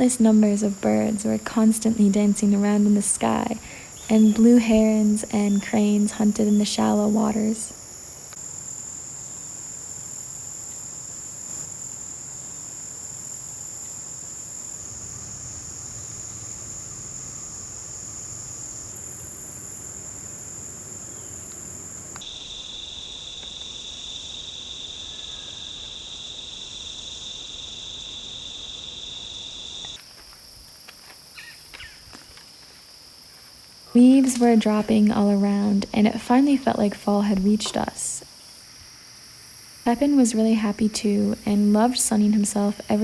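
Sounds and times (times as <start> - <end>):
crickets trilling: 0.0 - 43.0
low insect trill: 0.0 - 43.0.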